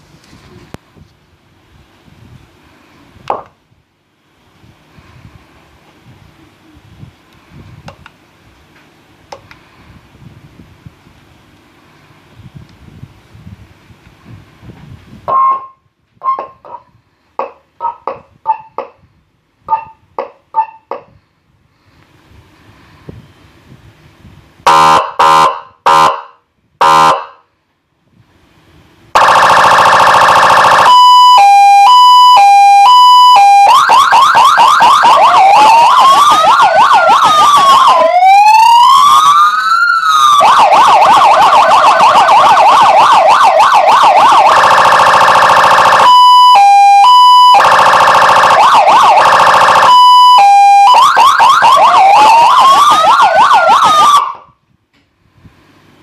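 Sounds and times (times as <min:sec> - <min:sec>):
short horn blasts: 0:24.7 - 0:27.3
electronic siren cycling tones: 0:29.2 - 0:54.5.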